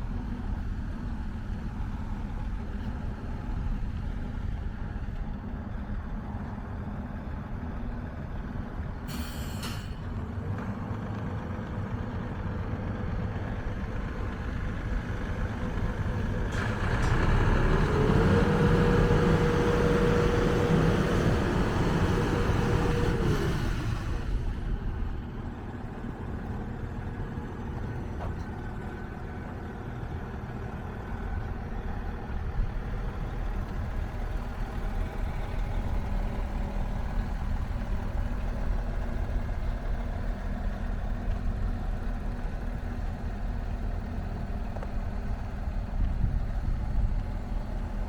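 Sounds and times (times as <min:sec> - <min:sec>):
excavator diesel engine running: 0:00.0 - 0:48.0
brief hiss: 0:09.1 - 0:10.1.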